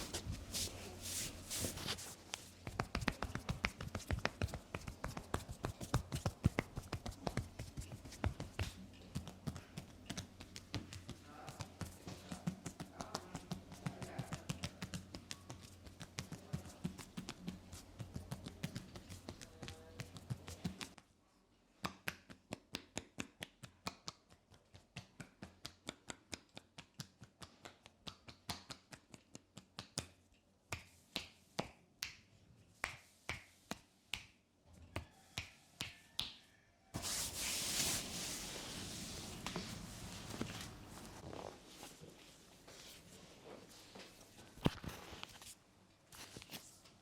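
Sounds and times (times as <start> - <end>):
hands tapping on body: 2.3 - 20.9
steady hiss: 37.0 - 41.2.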